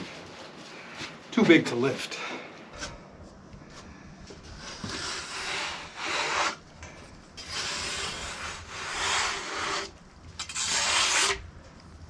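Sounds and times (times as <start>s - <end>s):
wooden slab scraping across wood: 4.5s - 6.6s, 7.4s - 11.4s.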